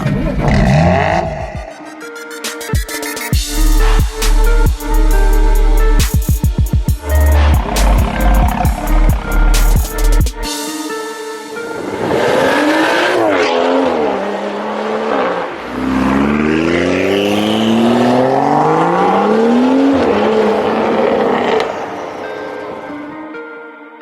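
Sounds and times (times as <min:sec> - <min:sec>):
car engine revving: 0:06.9 - 0:10.5, 0:11.7 - 0:22.2.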